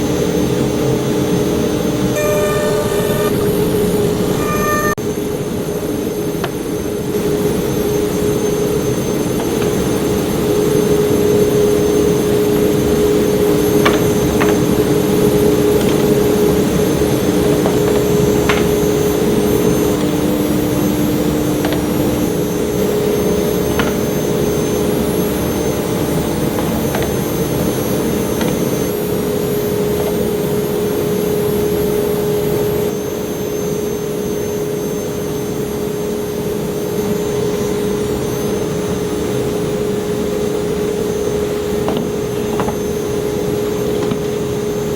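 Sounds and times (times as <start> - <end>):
lower tone: 2.2 - 5.0
router spindle whine: 2.2 - 23.6.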